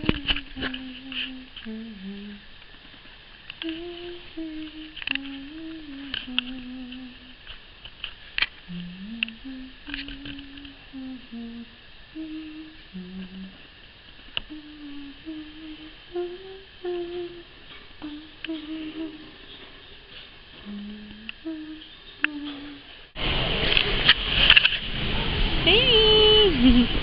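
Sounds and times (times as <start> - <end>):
person humming a slow tune: 0.0 - 2.5, 3.5 - 7.5, 8.7 - 13.8, 14.4 - 19.8, 20.5 - 23.0.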